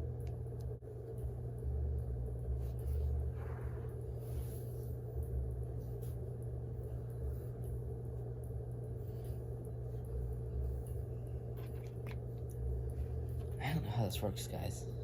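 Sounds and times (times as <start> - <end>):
low background hum: 0.0 - 15.0.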